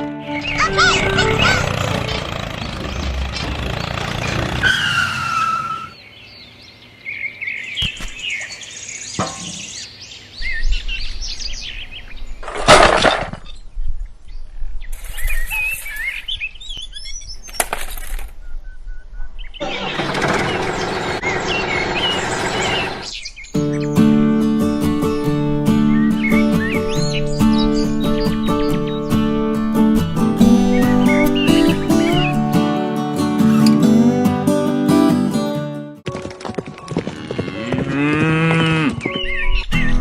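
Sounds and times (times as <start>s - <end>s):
bird chirps: 18.4s - 24.0s.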